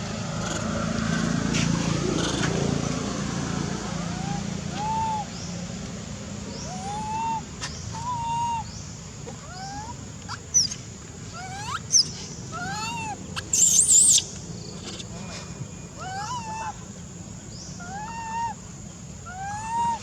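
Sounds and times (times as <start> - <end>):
monkey coos: 4.0 - 5.3, 6.7 - 8.6, 11.4 - 14.2, 16.0 - 16.8
monkey high squeaks: 11.4 - 12.0, 12.7 - 14.2
monkey shrill squeal: 11.4 - 12.0, 12.6 - 14.2.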